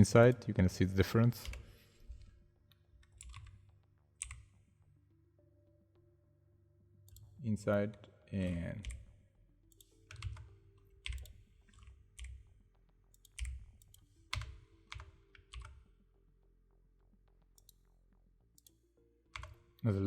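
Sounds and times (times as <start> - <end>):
faint keyboard keystrokes: 1.3 - 2.4.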